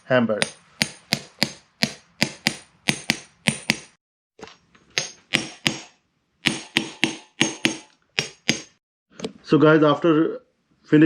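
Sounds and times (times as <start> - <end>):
hammer tapping metal: 0.4 - 4.0, 4.9 - 8.8.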